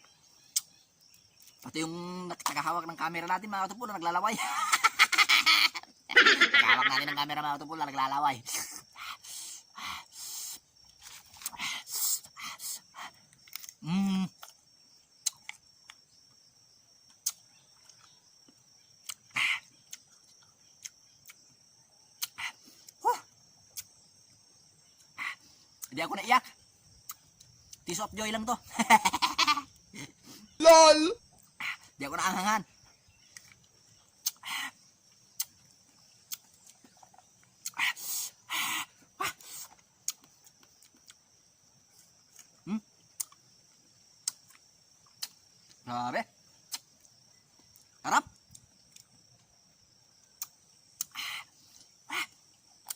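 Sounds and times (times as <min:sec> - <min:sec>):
crickets chirring: 0:00.0 - 0:52.9
insect drone: 0:00.0 - 0:52.9
chewing crunches and mouth smacks: 0:13.2 - 0:13.8, 0:14.4 - 0:16.0, 0:33.2 - 0:34.4, 0:35.0 - 0:37.8, 0:39.4 - 0:41.4, 0:42.1 - 0:43.5, 0:44.1 - 0:45.8, 0:46.6 - 0:49.5, 0:50.2 - 0:51.2
dry pods cracking: 0:13.2 - 0:16.0.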